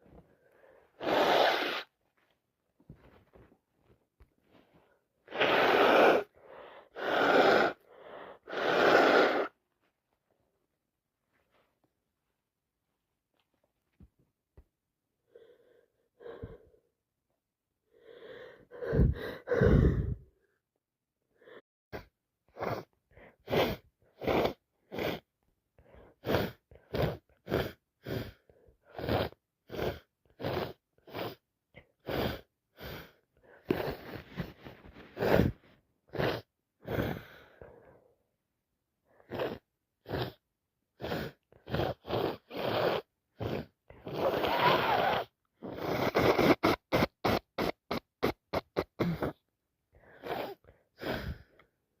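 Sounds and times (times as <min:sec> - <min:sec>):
person sneezing and sniffing: 0:00.8 - 0:02.0, 0:05.2 - 0:09.6, 0:22.0 - 0:25.3, 0:26.2 - 0:31.4, 0:32.0 - 0:37.8, 0:39.2 - 0:40.4, 0:41.0 - 0:51.6
noisy breaths: 0:04.4 - 0:09.6, 0:17.9 - 0:20.4, 0:49.9 - 0:51.7.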